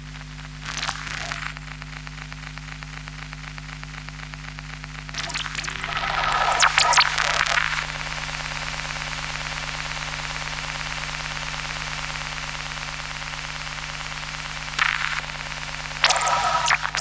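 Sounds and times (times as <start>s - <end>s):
static hiss: 0.6s - 7.9s, 14.7s - 17.0s
burst of interference: 16.0s - 17.0s.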